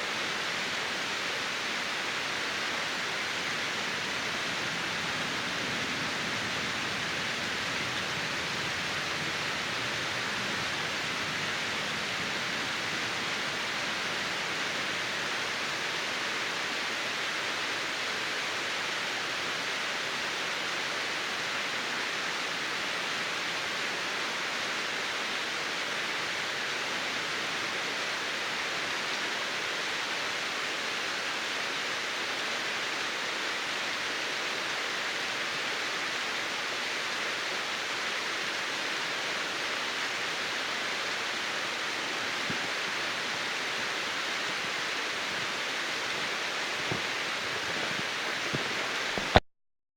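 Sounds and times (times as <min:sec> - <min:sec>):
waterfall rushing: 0:00.0 - 0:49.4.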